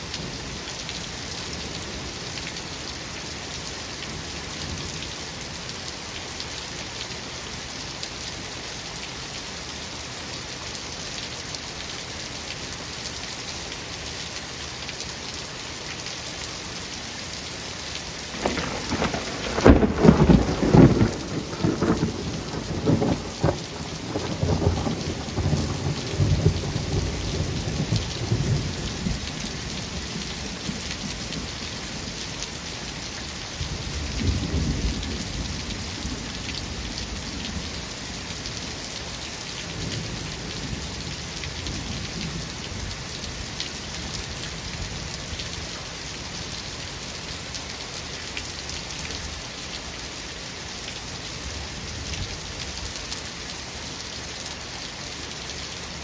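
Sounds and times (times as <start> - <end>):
heavy rain: 0.0 - 56.0
low rolls of thunder: 18.4 - 29.3.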